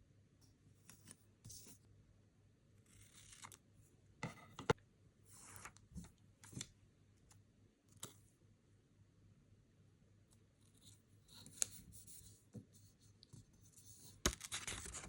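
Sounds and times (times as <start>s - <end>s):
paper rustling: 14.0s - 15.0s.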